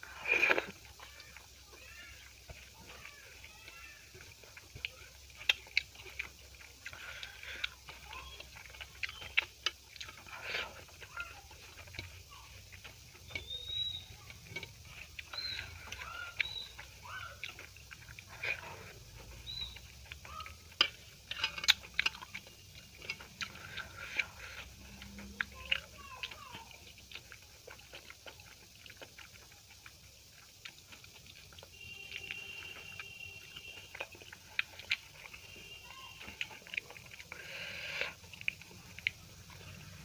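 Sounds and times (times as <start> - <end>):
person chewing and lip-smacking: 0.0 - 40.0
wet mouth clicks: 36.3 - 40.0.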